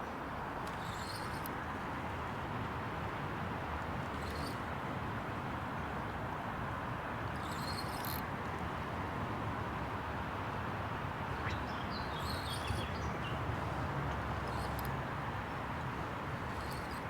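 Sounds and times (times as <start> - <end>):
outdoor background noise: 0.0 - 17.0
small bird chirping: 11.4 - 13.4.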